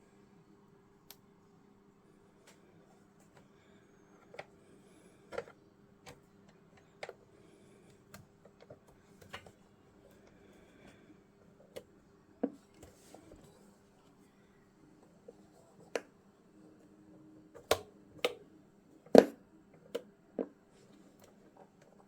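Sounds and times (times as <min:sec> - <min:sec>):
low steady hum: 0:00.0 - 0:22.0.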